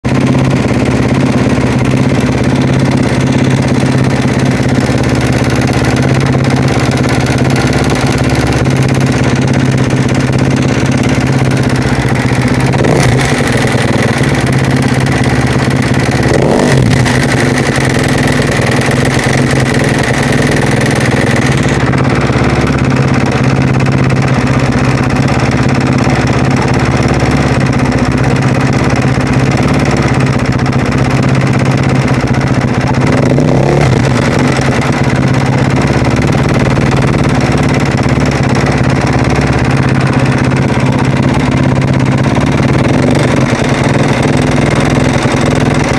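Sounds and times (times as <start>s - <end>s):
motorcycle engine running: 0.0s - 45.9s
strange engine noise: 0.0s - 45.9s.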